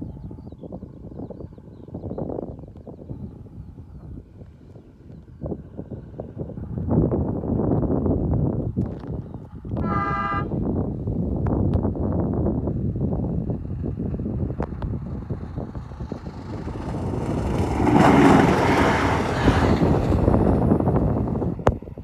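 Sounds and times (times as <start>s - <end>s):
train wheels rumbling and clacking: 14.6s - 21.8s.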